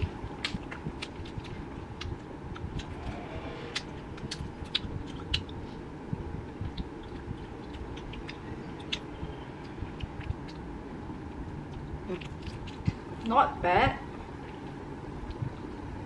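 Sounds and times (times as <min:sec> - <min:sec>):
chewing sticky taffy: 0:00.0 - 0:13.4, 0:14.1 - 0:16.0
wet mouth clicks and smacks: 0:03.7 - 0:05.6, 0:06.6 - 0:09.1, 0:09.7 - 0:10.7, 0:11.7 - 0:13.0.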